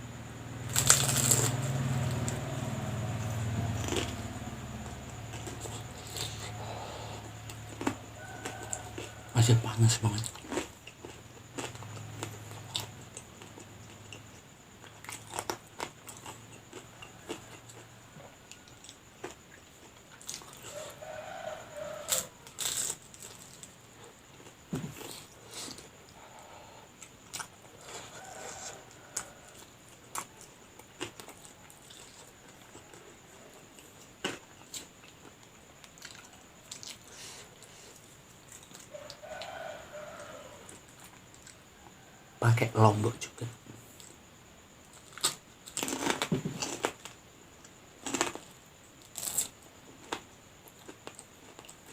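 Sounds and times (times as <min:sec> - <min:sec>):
crisp crunching bites: 0:00.7 - 0:01.6, 0:45.0 - 0:47.0, 0:49.1 - 0:49.5
chewing: 0:03.6 - 0:09.3, 0:10.0 - 0:21.0, 0:22.0 - 0:23.8, 0:24.4 - 0:39.4, 0:44.9 - 0:47.1.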